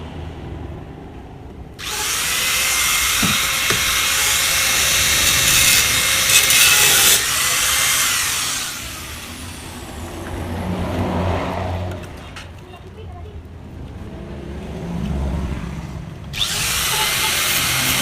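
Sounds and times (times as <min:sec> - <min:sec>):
angle grinder cutting steel: 0:01.8 - 0:10.2, 0:16.3 - 0:18.0.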